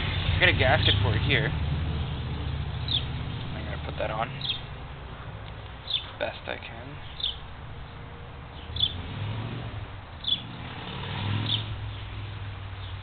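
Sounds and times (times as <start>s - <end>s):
passing vehicle rumble: 0.0s - 13.0s
bird chirping: 1.9s - 9.2s, 10.2s - 10.6s, 11.4s - 13.0s.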